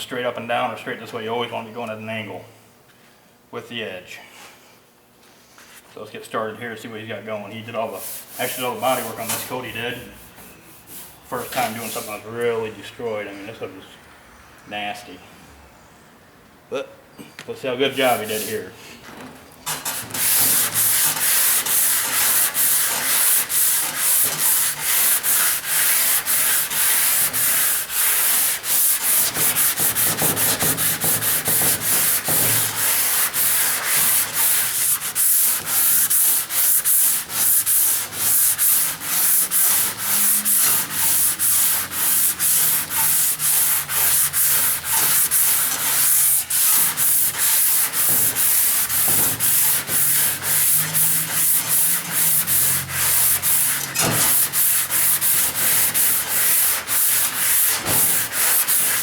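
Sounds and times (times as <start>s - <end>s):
sandpaper scrubbing on metal: 7.8s - 12.3s, 17.9s - 18.7s, 19.7s - 59.0s.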